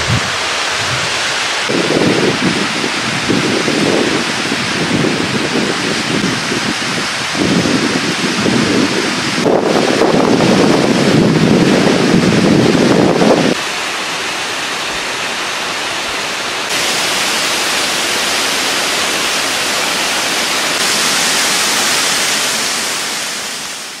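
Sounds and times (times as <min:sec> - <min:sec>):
waterfall rushing: 0:00.0 - 0:24.0.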